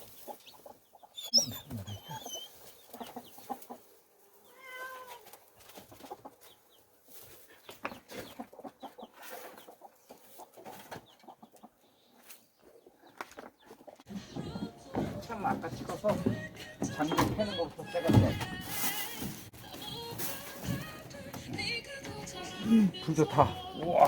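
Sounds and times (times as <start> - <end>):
drawn-out animal call: 1.1 - 2.5.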